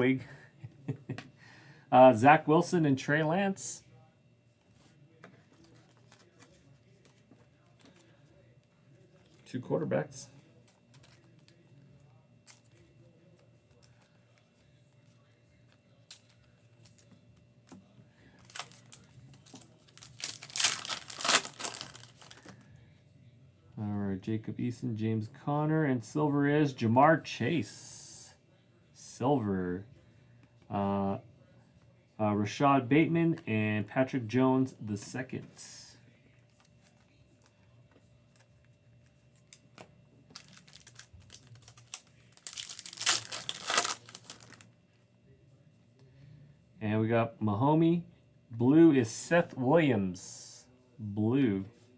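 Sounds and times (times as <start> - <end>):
foil wrapper crinkling: 18.4 - 22.6, 40.3 - 44.7
foil wrapper tearing: 18.4 - 22.6, 40.3 - 44.6.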